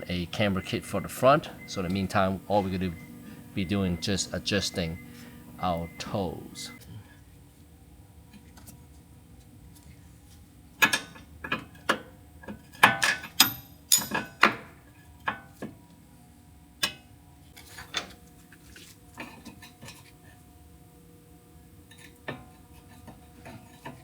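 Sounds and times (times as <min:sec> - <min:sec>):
hand tools clinking on metal: 0:12.9 - 0:14.4.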